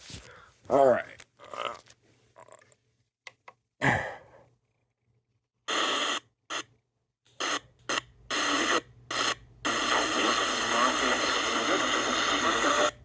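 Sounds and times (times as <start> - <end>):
radio static hiss: 5.7 - 6.6, 7.4 - 13.0.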